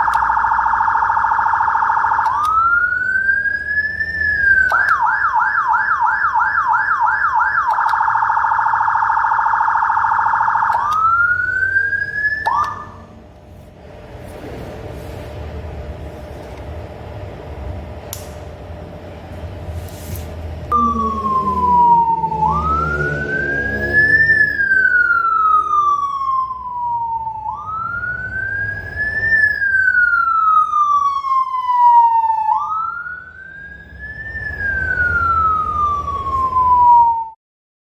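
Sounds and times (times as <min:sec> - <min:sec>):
motorcycle siren wailing: 0:00.0 - 0:13.4, 0:20.7 - 0:37.4
low rumble: 0:20.4 - 0:26.2.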